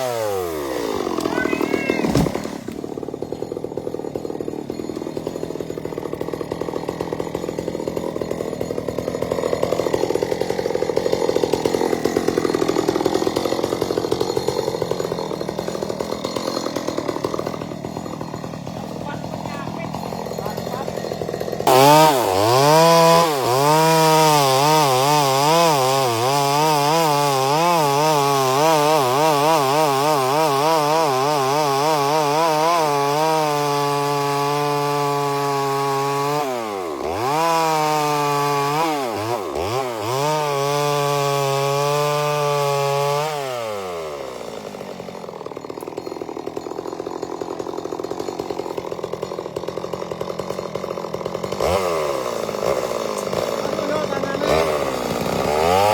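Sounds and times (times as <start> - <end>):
chainsaw cutting: 0.0 - 55.9.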